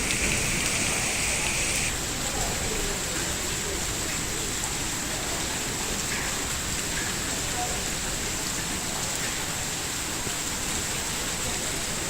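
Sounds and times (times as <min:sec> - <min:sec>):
heavy rain hissing: 0:00.0 - 0:02.2.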